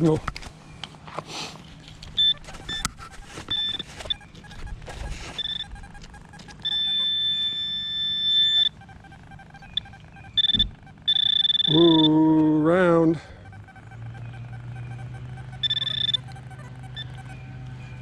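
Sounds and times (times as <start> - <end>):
digging scrapes and clicks: 1.1 - 6.8
metal detector steady tone: 1.8 - 18.0
metal detector beeps: 2.1 - 18.0.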